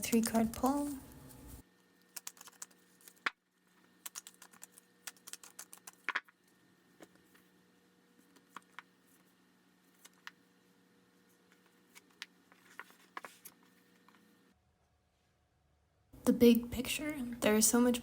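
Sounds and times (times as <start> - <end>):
cards clicking and tapping: 2.2 - 3.4, 4.0 - 6.3.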